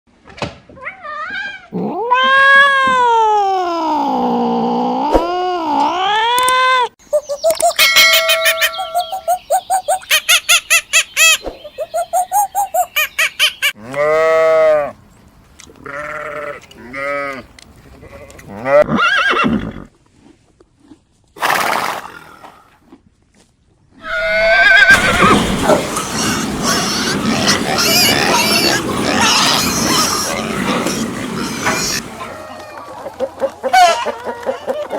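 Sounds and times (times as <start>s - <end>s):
hen clucking: 7.2s - 13.8s, 24.0s - 32.5s
horse whinnying: 18.7s - 19.9s, 24.0s - 26.6s
overlapping animal calls: 24.0s - 32.5s.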